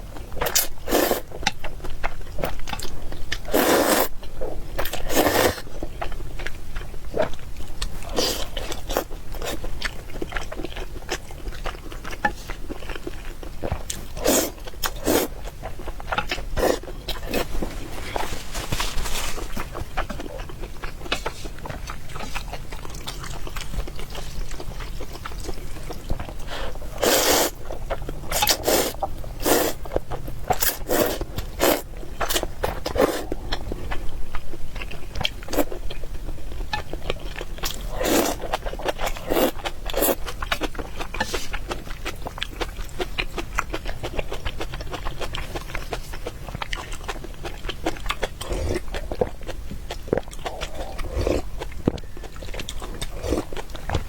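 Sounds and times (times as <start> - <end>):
chewing: 0.1 - 54.0
noodle slurping: 3.5 - 4.1, 5.0 - 5.6, 14.2 - 15.4, 25.5 - 27.6, 28.3 - 29.8, 30.5 - 33.3, 37.8 - 38.5.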